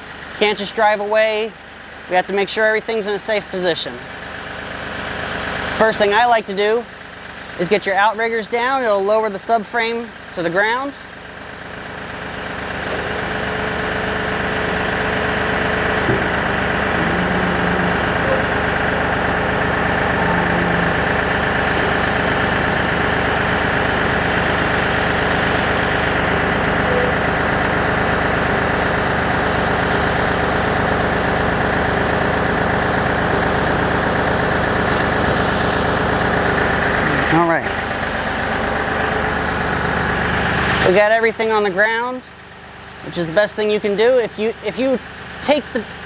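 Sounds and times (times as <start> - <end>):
tractor diesel engine running: 0.0 - 46.0
hydraulics lowering outriggers: 15.5 - 29.1, 34.7 - 35.5.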